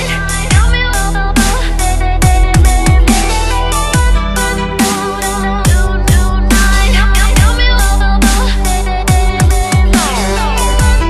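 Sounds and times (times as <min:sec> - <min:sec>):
electronic dance music: 0:00.0 - 0:11.0
heavy kick drums: 0:00.4 - 0:08.4, 0:09.0 - 0:11.0
sustained synth chord: 0:00.9 - 0:08.2.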